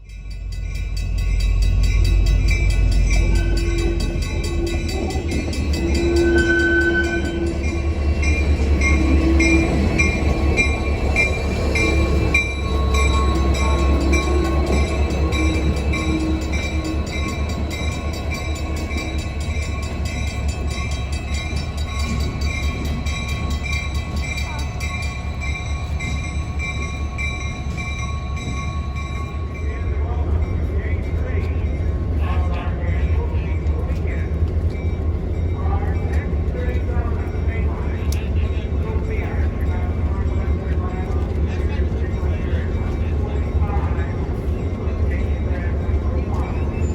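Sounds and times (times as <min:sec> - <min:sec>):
diesel locomotive rumbling: 0:00.0 - 0:46.9
locomotive bell ringing: 0:00.0 - 0:46.9
locomotive horn notes: 0:03.2 - 0:08.0.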